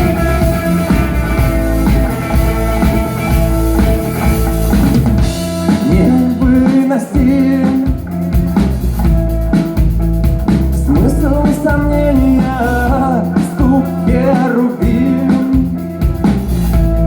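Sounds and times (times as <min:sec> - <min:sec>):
rock song with drums and guitar: 0:00.0 - 0:17.0
person singing: 0:05.7 - 0:08.0, 0:10.8 - 0:15.9.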